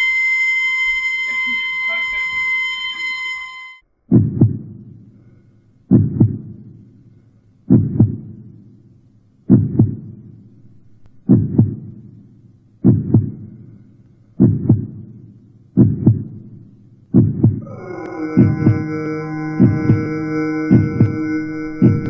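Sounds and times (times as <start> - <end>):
heartbeat thumping: 4.1 - 4.9, 5.9 - 6.7, 7.7 - 8.5, 9.5 - 10.2, 11.2 - 12.0, 12.8 - 13.5, 14.4 - 15.2, 15.8 - 17.7, 18.4 - 18.9, 19.5 - 22.0.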